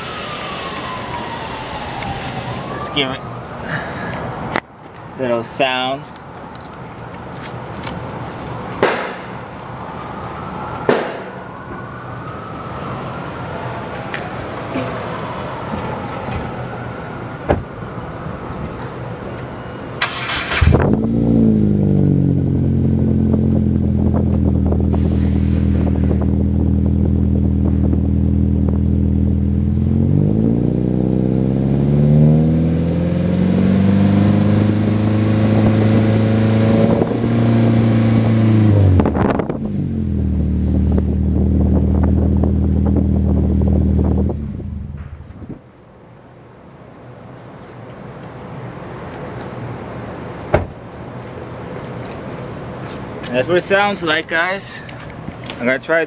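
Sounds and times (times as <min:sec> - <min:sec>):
car engine idling and revving: 0:18.5 - 0:45.7.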